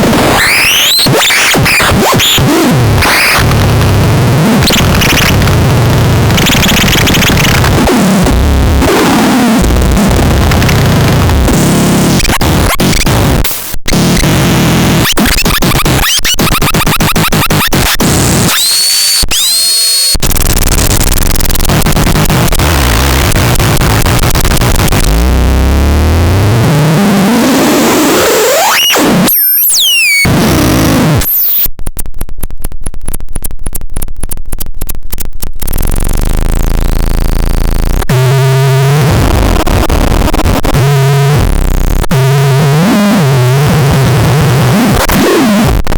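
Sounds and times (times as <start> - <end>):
rapid stuttering pulses: 0.0 - 18.8, 20.2 - 25.9, 35.6 - 45.9
crackling static: 0.0 - 45.9
harsh distorted synth noise: 0.0 - 45.9
stepped buzzing tones: 0.0 - 45.9.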